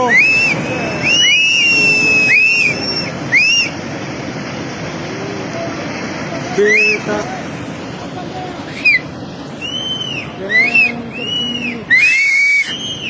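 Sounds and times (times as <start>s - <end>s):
shrill whistles: 0.0s - 3.8s, 6.7s - 7.1s, 8.7s - 9.0s, 9.6s - 13.0s
floodwater roaring: 0.0s - 13.0s.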